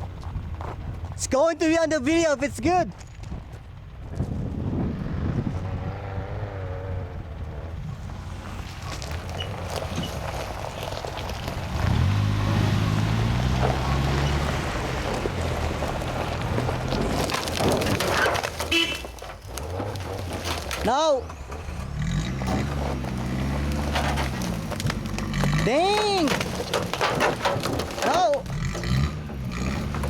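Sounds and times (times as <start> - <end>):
vehicle engine revving: 3.7 - 30.0
wind noise on microphone: 4.1 - 6.3.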